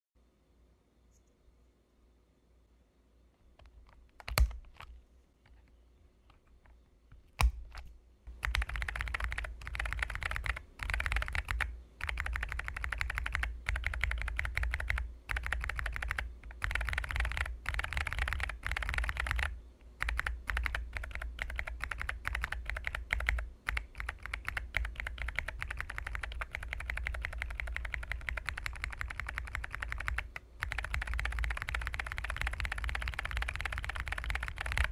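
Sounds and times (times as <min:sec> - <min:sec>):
typing on mechanical keyboard: 0:03.6 - 0:05.0, 0:07.4 - 0:34.9.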